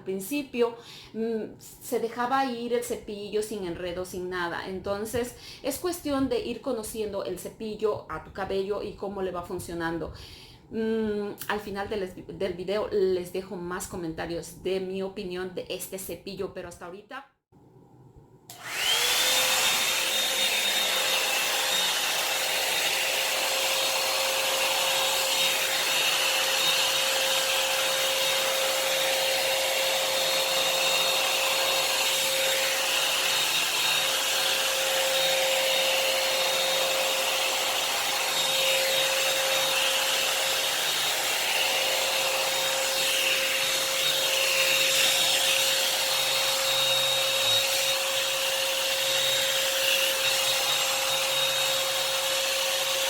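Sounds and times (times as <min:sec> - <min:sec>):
hair dryer brush whine and airflow: 0:18.5 - 0:53.0.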